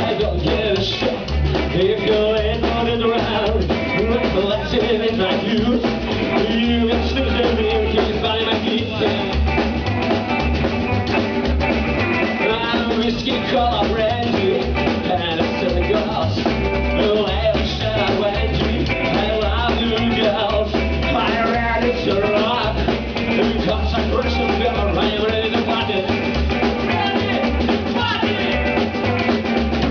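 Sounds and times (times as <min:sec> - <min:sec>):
live rock band playing: 0:00.0 - 0:29.9.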